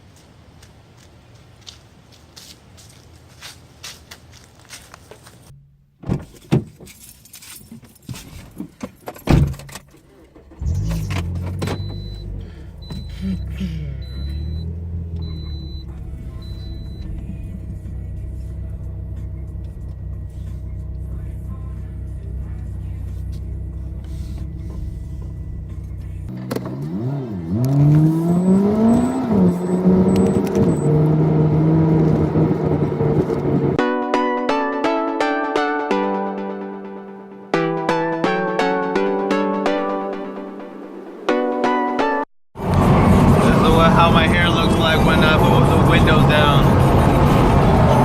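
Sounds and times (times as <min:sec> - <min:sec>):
car door thumps: 0:06.0 - 0:06.8
keys clattering: 0:06.7 - 0:09.2
car engine running: 0:10.0 - 0:33.8, 0:42.6 - 0:48.0
electronic warning chime beeps: 0:11.6 - 0:17.1, 0:28.2 - 0:31.2.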